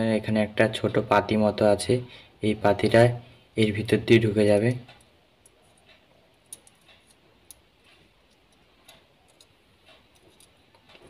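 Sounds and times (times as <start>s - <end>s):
switch parts clicking: 4.8s - 11.0s.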